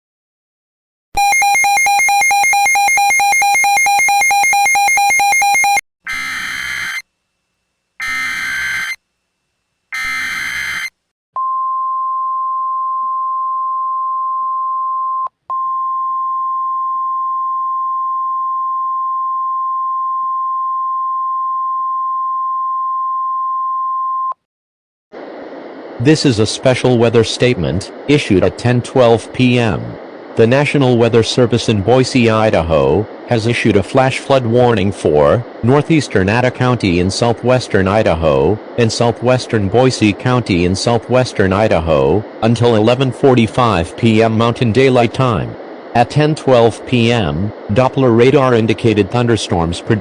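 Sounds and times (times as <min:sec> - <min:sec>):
steady alert tone: 0:01.2 - 0:07.0, 0:08.0 - 0:09.0, 0:09.9 - 0:10.9
harsh buzzing tone: 0:06.0 - 0:11.1
warbling data bursts: 0:06.1 - 0:07.0, 0:08.0 - 0:09.0, 0:09.9 - 0:10.9.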